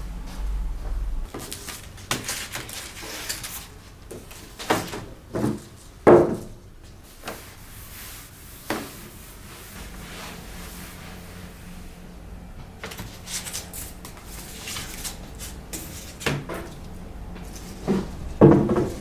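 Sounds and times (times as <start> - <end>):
low rumble: 0.0 - 1.4
household knocks and clunks: 17.9 - 19.0.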